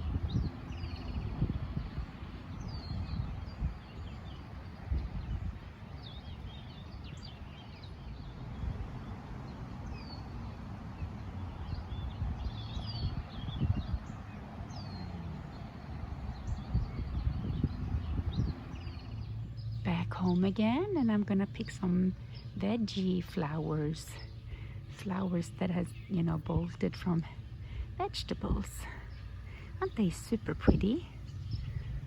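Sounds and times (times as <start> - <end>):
songbirds chirping: 0.0 - 32.0
low rumble: 8.1 - 32.0.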